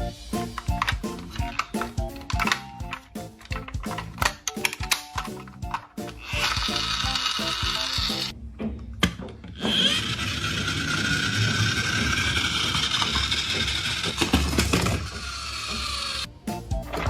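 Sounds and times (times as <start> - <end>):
toy train whirring: 0.3 - 8.3, 9.6 - 16.3
clicks: 0.4 - 6.8.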